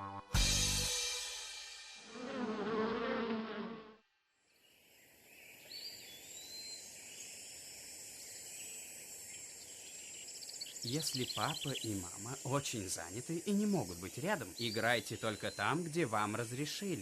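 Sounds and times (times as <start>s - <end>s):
insects buzzing and chirping: 4.5s - 17.0s.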